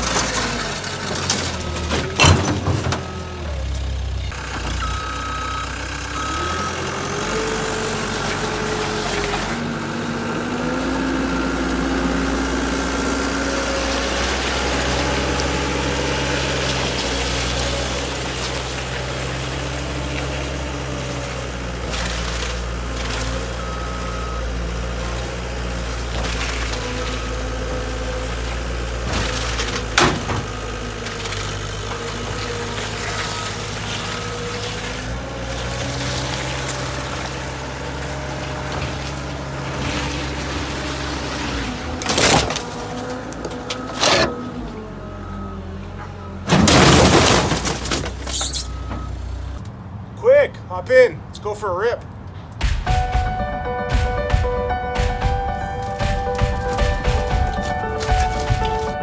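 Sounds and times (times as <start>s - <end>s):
skid steer engine running: 0.0s - 49.9s, 52.3s - 59.0s
sharp bang: 52.6s - 59.0s.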